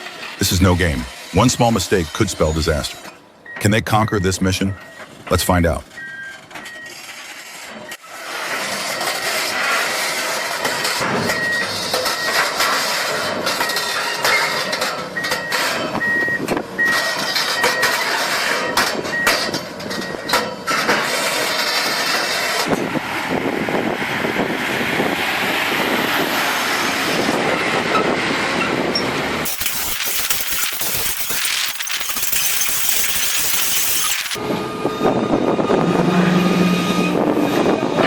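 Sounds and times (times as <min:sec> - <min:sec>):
reversing alarm beeping: 0:00.4 - 0:07.3, 0:29.5 - 0:34.4
heavy machinery engine: 0:29.5 - 0:34.8.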